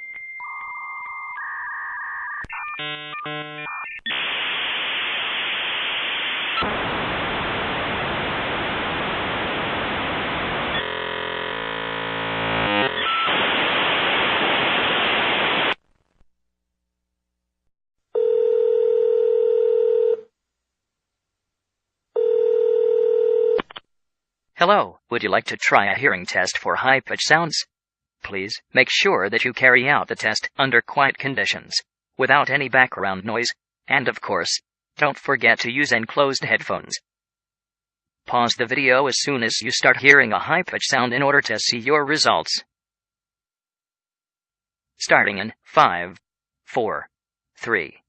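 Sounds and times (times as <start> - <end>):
buzzy tone: 2.8 - 15.8
modem noise hiss: 2.8 - 16.2
dial-up modem handshake tones: 12.9 - 13.4.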